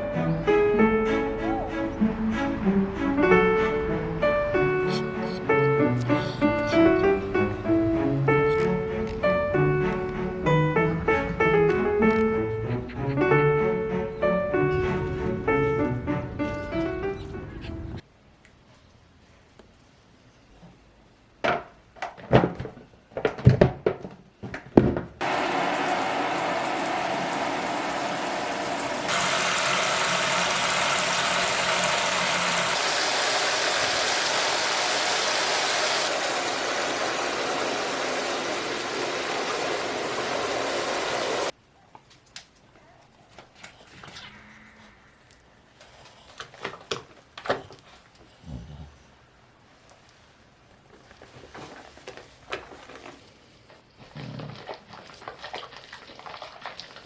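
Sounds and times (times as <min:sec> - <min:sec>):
water running from a tap: 0:25.2 - 0:41.5.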